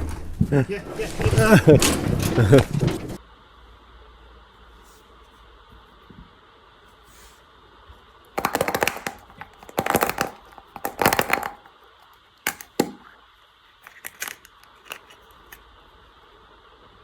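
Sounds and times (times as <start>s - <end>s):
packaging tearing and crinkling: 8.4s - 11.7s, 12.5s - 13.1s, 13.8s - 15.6s.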